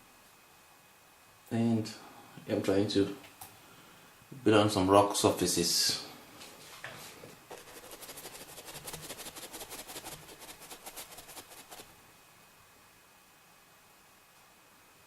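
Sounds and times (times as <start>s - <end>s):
paintbrush dabbing on board: 7.5s - 11.9s.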